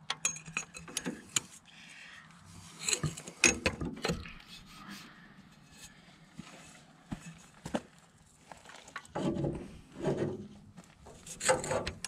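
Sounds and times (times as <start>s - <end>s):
metal tools clinking and knocking: 0.1s - 1.4s, 2.8s - 4.4s.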